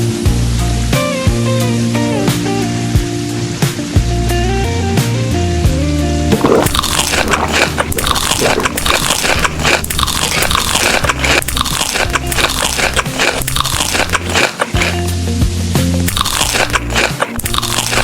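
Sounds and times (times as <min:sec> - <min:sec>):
crunchy chewing: 0:06.3 - 0:15.1, 0:16.1 - 0:18.0.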